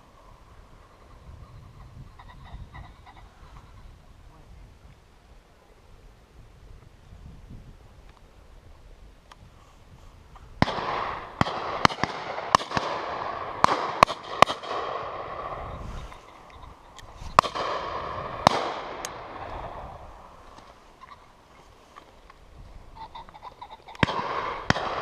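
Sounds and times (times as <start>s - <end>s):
shotgun shots echoing: 10.6s - 15.8s, 17.4s - 20.2s, 24.0s - 25.0s.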